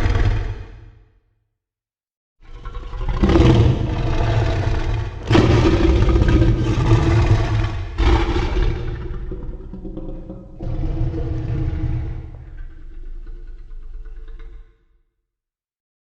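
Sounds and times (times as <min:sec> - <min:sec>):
monster roar sound effect: 0:02.8 - 0:12.7.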